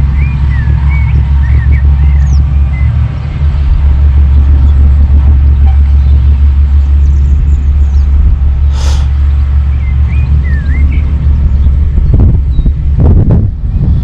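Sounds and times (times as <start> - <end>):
bird chirps: 0.0 - 2.9, 9.7 - 11.8
wind buffeting microphone: 0.0 - 14.0
brief hiss: 8.7 - 9.1.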